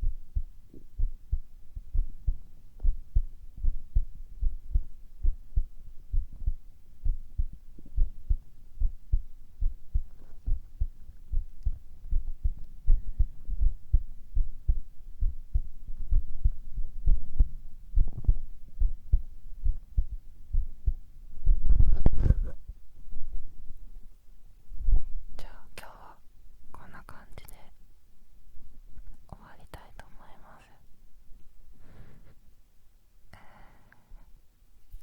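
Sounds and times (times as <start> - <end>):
heartbeat thumping: 0.0 - 23.4
rustling noise: 9.8 - 13.6, 21.3 - 23.7, 31.3 - 32.6.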